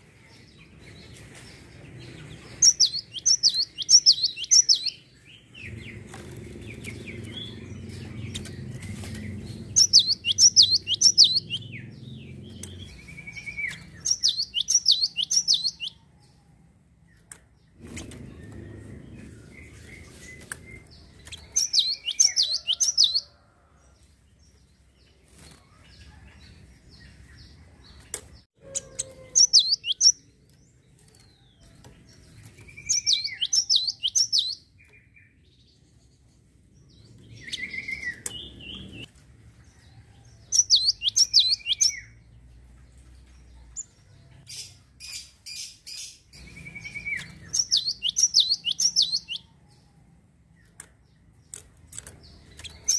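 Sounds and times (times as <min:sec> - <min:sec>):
sparrow singing: 0:00.0 - 0:16.4, 0:17.1 - 0:23.6, 0:24.5 - 0:39.1, 0:39.7 - 0:49.9, 0:50.5 - 0:52.9.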